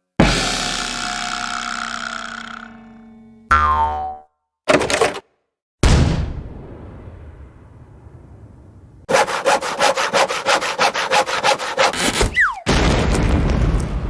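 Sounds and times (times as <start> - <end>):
cartoon hand saw cutting wood: 9.1 - 12.6.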